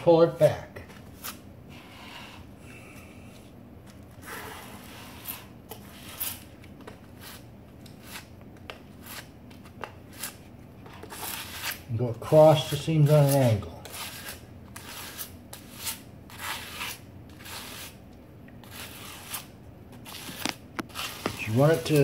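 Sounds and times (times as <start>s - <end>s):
spatula scraping grout on tile: 4.2s - 8.3s, 10.1s - 11.8s, 12.5s - 18.0s, 18.6s - 22.0s.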